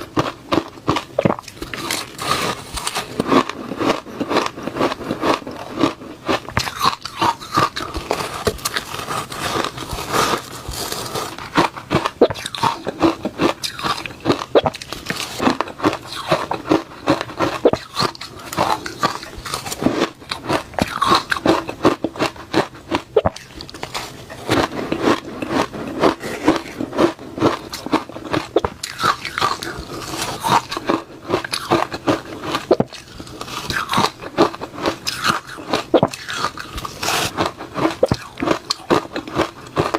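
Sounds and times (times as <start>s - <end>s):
crunching and chewing ice: 0.0s - 39.9s.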